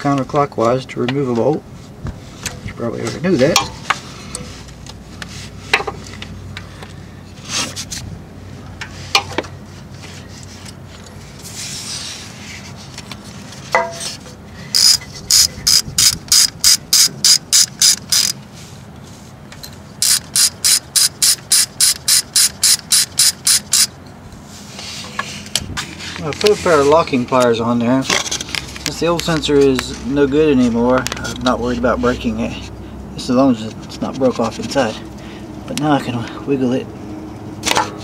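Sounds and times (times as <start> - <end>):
ratchet wrench clicking: 14.7 - 18.4, 20.0 - 23.9.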